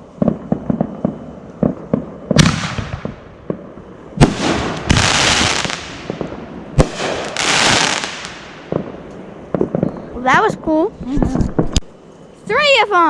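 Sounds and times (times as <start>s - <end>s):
firework bangs: 0.0s - 10.4s
firework hiss: 0.0s - 11.8s.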